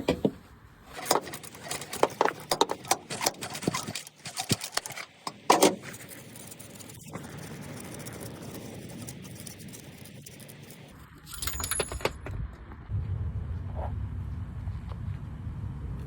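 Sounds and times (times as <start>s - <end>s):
metal tools clinking: 0.9s - 7.1s, 9.9s - 12.3s
low handling rumble: 11.8s - 16.0s.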